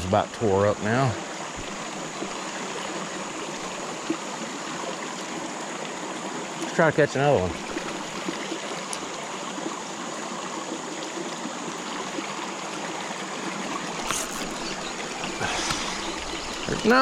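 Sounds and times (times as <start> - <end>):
creek water rushing: 0.0 - 17.0
brief rustle: 14.0 - 14.8.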